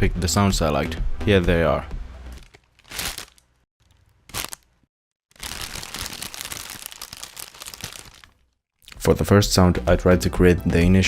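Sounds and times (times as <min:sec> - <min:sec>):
plastic bag rustling: 0:02.4 - 0:08.6.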